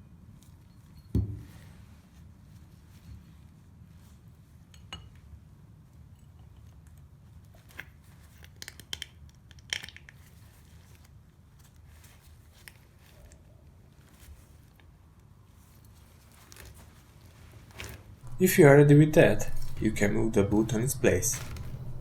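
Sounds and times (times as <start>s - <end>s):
faint low hum: 18.2s - 22.0s.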